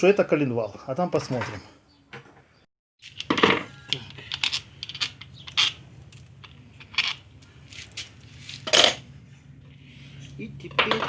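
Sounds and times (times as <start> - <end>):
metal tools clinking: 4.0 - 9.0.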